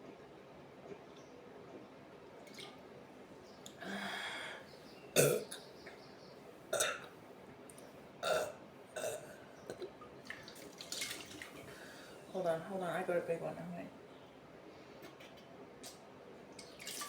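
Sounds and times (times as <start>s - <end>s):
woman burping: 5.2s - 5.6s, 6.7s - 7.1s, 8.2s - 9.8s.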